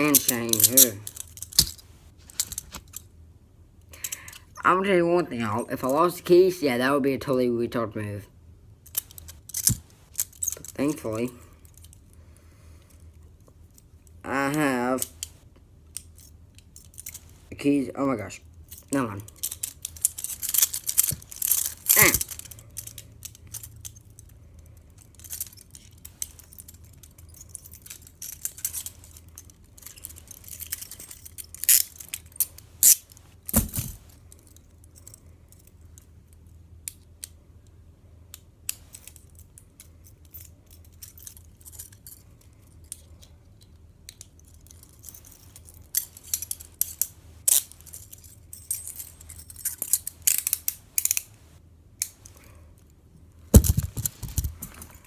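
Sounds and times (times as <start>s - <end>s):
handcuffs clicking and jangling: 0.0s - 3.1s, 4.0s - 4.5s, 8.9s - 12.2s, 15.0s - 17.4s, 18.5s - 37.4s, 38.7s - 51.4s, 52.0s - 52.9s, 53.5s - 55.0s.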